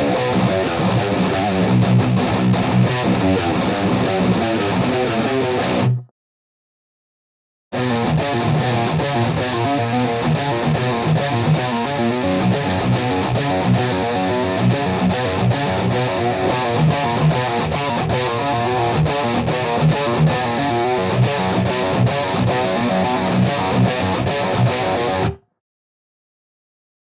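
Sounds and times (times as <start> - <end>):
distorted electric guitar metal riff: 0.0 - 6.0, 7.8 - 25.4.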